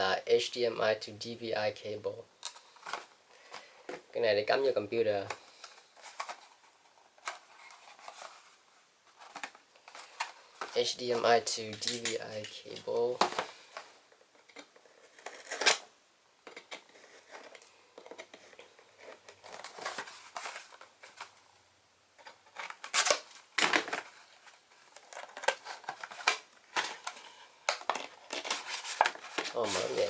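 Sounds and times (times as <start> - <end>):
packaging rustling and crinkling: 5.2 - 15.8, 16.5 - 21.4, 22.2 - 30.0.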